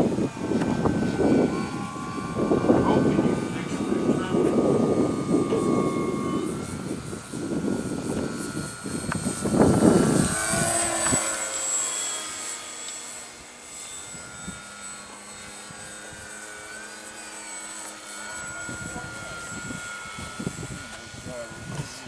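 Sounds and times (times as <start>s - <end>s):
wind rumbling on microphone: 0.0s - 11.6s, 14.0s - 16.3s, 18.4s - 22.0s
model plane motor whining: 0.0s - 22.0s.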